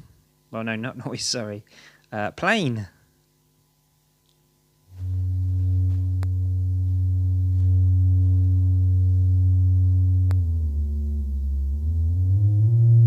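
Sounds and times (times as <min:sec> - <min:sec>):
low steady oscillator tone: 0:04.8 - 0:13.0.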